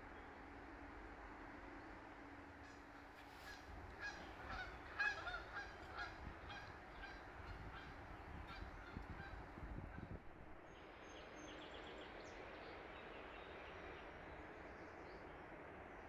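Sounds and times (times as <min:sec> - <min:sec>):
geese honking: 0:03.5 - 0:09.4.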